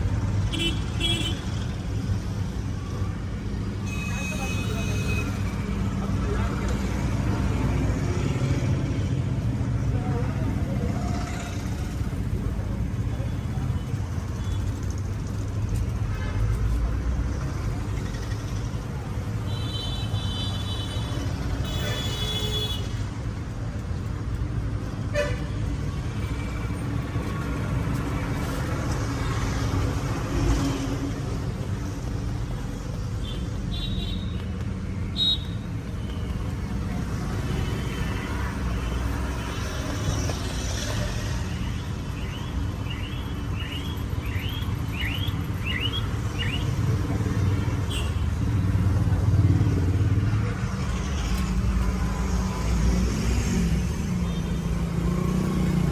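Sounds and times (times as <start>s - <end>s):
street traffic: 0.0s - 55.9s
vehicle horns tooting: 25.1s - 25.6s.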